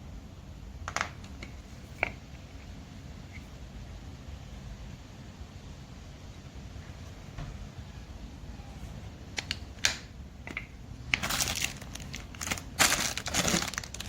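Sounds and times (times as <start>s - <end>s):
low steady hum: 0.0s - 14.0s
crinkling and crumpling handling: 11.1s - 14.0s.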